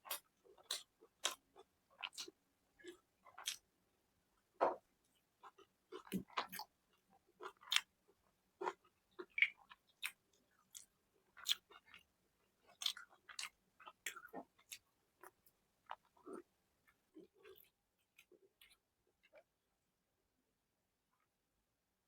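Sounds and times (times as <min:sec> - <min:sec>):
wet chewing: 0:00.1 - 0:03.6, 0:08.6 - 0:19.4.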